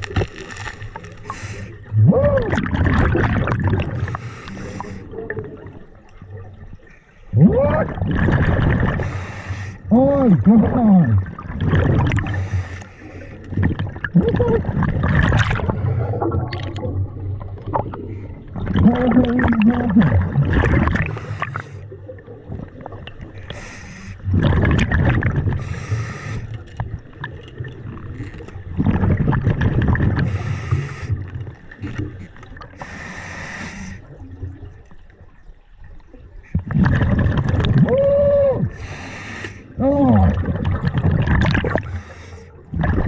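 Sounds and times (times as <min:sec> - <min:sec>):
exhaled bubbles gurgling: 0:00.0 - 0:43.0
regulator inhale hiss: 0:04.1 - 0:05.1, 0:09.0 - 0:09.8, 0:23.5 - 0:24.2, 0:25.6 - 0:26.5, 0:30.3 - 0:31.2, 0:32.8 - 0:34.1, 0:38.8 - 0:39.7.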